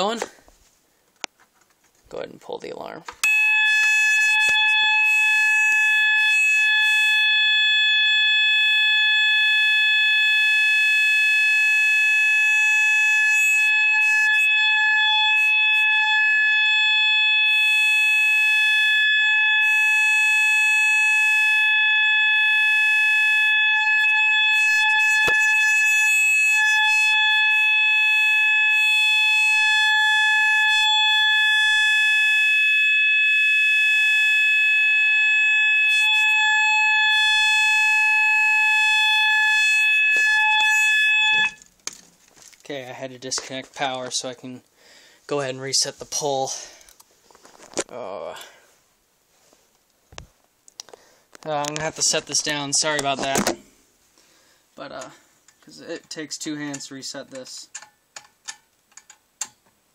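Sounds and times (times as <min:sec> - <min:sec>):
fire alarm continuous tone: 0:03.2 - 0:41.7.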